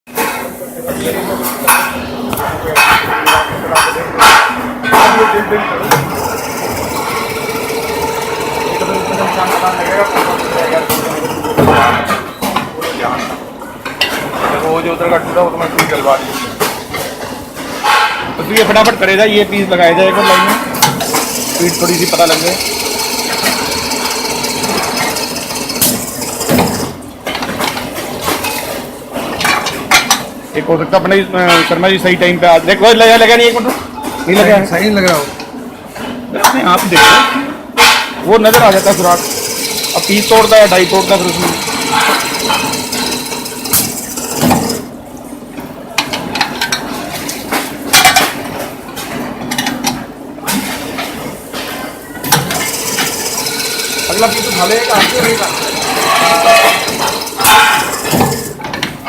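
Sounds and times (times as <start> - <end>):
drilling machine whine: 6.2 - 11.5, 21.3 - 26.5, 38.7 - 44.8, 52.6 - 58.0.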